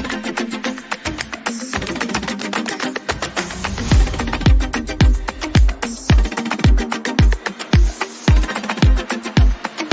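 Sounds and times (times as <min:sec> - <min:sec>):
deep kick drum: 0:03.2 - 0:09.5.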